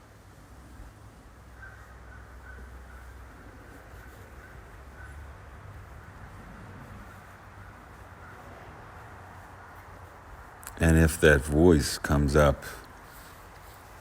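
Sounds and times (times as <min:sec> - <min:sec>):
bird calling: 0:01.5 - 0:06.0.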